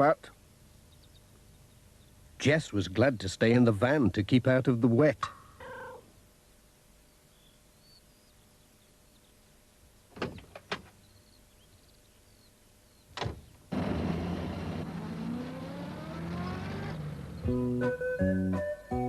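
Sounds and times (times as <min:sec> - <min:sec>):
van engine driving away: 0:13.7 - 0:18.4.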